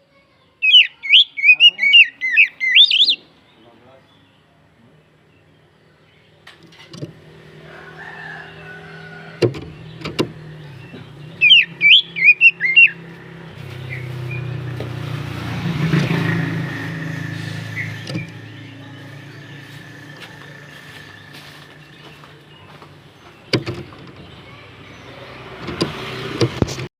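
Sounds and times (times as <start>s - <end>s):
bird whistling sweeping notes: 0.7s - 3.2s, 11.4s - 13.1s
car passing: 6.3s - 26.9s.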